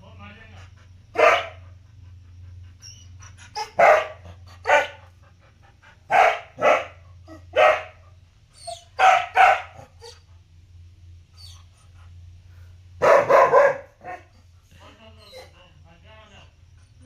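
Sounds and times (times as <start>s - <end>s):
steady low hum: 0.0s - 17.0s
dog barking: 1.1s - 1.7s, 3.6s - 5.0s, 6.1s - 8.2s, 8.8s - 10.1s, 13.0s - 14.4s.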